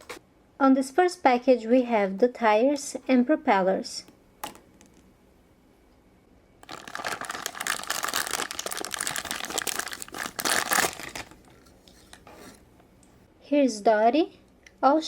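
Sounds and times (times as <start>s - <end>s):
plastic bag crinkling: 6.6s - 12.6s.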